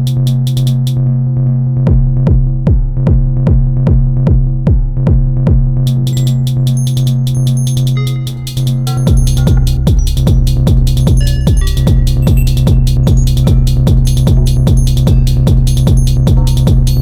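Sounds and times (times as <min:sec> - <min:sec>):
hi-hats: 0:00.0 - 0:01.0, 0:05.9 - 0:17.0
techno groovebox pattern: 0:00.0 - 0:01.0, 0:05.9 - 0:17.0
kick drum dropping in pitch: 0:01.9 - 0:05.8, 0:09.1 - 0:17.0
low bass drone: 0:05.9 - 0:17.0.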